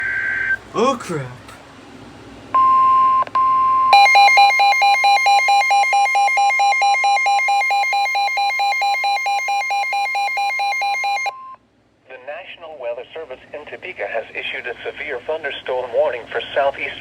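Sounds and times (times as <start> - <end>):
electronic alarm beeping rapidly: 2.6 - 11.3
steady alarm tone: 3.9 - 11.3.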